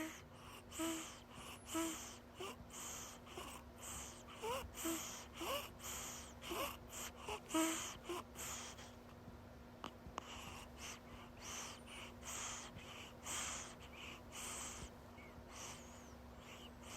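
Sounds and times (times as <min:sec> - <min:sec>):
quick noisy breathing: 0:10.2 - 0:16.9.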